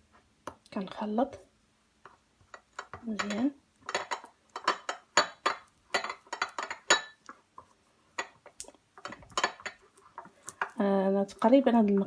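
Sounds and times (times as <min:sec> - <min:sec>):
spoon clinking against a dish: 0:02.5 - 0:07.3.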